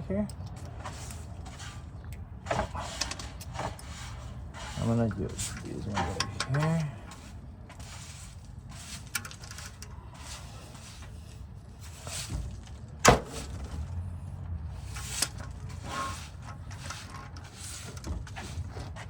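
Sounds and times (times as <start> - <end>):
hand tools clinking on metal: 4.7 - 7.3.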